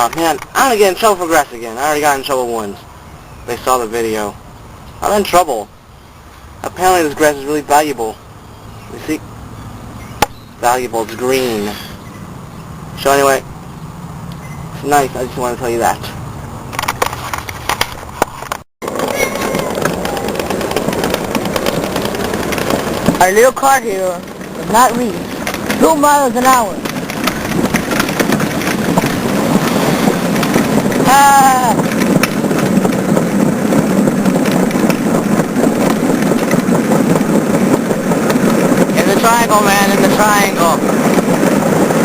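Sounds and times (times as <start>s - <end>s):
clicks and crackles: 16.7s - 39.0s
toy car rattling over ground: 16.8s - 41.9s.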